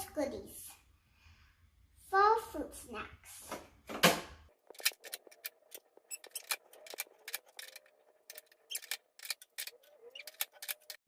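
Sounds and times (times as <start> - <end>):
plastic toys clicking and clattering: 4.6 - 11.0.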